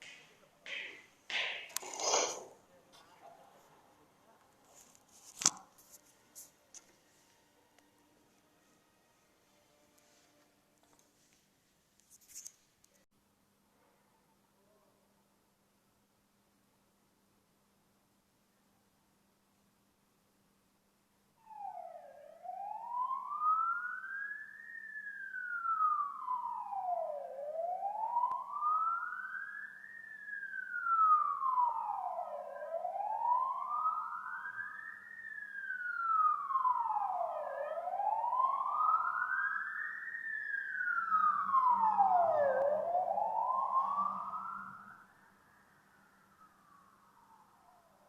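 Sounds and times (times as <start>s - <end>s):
police siren wailing: 21.4s - 48.0s.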